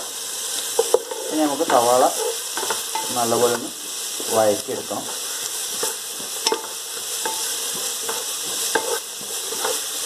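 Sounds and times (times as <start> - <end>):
onions sizzling in hot oil: 0.0 - 10.0
spatula scraping a pan: 0.5 - 4.4, 5.0 - 10.0.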